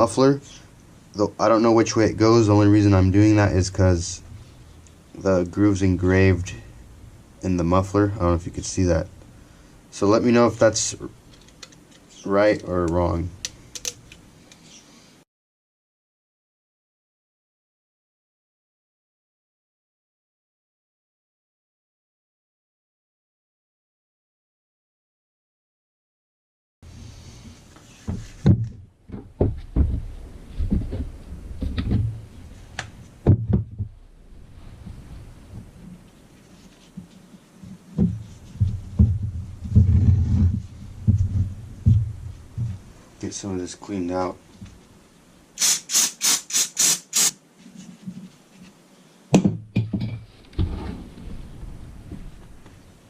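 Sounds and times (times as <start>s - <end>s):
hissing spray blasts: 45.6s - 47.4s
tools knocking on a workbench: 49.3s - 50.3s
parts clattering on a bench: 49.4s - 50.7s.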